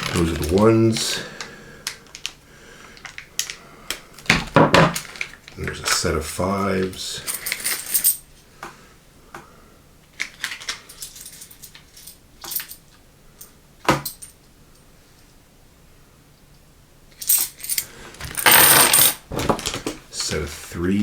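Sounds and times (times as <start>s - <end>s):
metal coins clinking: 0.0s - 1.3s, 7.2s - 8.4s, 10.2s - 14.4s, 17.2s - 19.2s.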